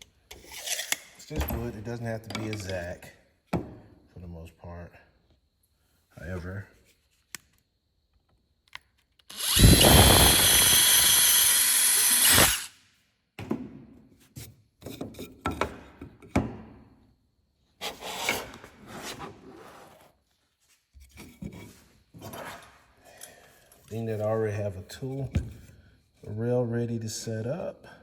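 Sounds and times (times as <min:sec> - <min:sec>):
tools and wood clattering: 0:00.0 - 0:03.9, 0:13.4 - 0:16.8, 0:20.9 - 0:24.0
power drill boring wood: 0:09.3 - 0:12.7.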